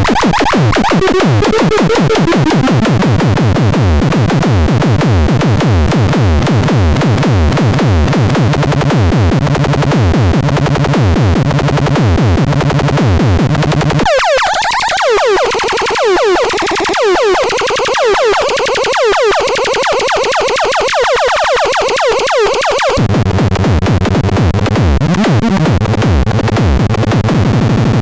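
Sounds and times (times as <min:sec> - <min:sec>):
synthesizer electronic zaps: 0:00.0 - 0:03.0, 0:14.0 - 0:23.0.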